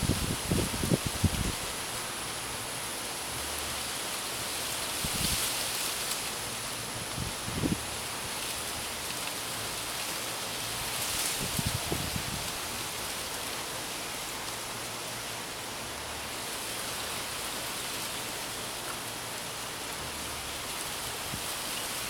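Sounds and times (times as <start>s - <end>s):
heavy rain falling: 0.0s - 22.0s.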